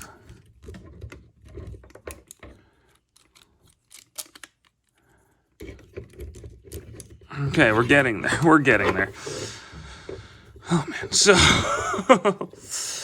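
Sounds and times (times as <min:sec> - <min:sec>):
plastic toy parts clicking: 0:00.6 - 0:05.0.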